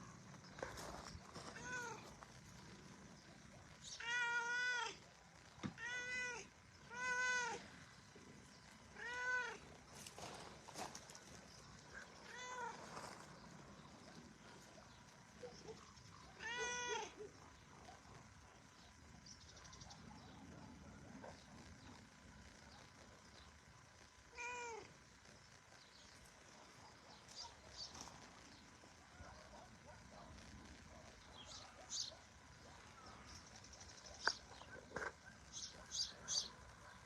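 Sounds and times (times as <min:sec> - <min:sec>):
cat meowing: 0:01.5 - 0:02.0, 0:04.0 - 0:05.0, 0:05.7 - 0:07.6, 0:09.0 - 0:09.6, 0:12.3 - 0:12.8, 0:16.4 - 0:17.1, 0:24.3 - 0:24.9.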